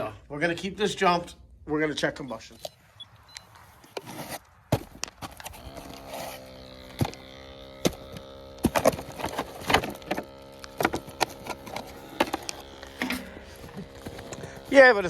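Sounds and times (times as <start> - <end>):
electric motor hum: 3.8 - 15.0
tools clicking and knocking: 7.9 - 13.3.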